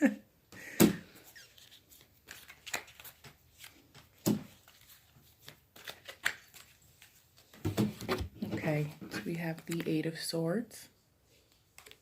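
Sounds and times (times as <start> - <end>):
cards shuffling: 1.1 - 10.0, 11.5 - 12.0.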